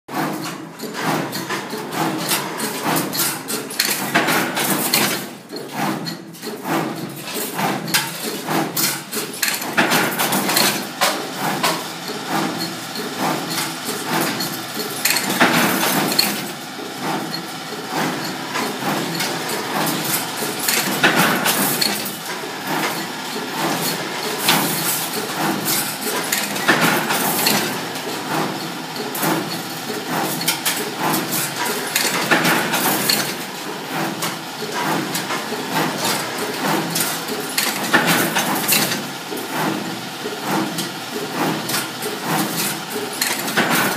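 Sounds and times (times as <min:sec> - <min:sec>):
wire bending machine running: 0:00.1 - 0:43.9
metallic knocks and clanks: 0:12.4 - 0:16.5.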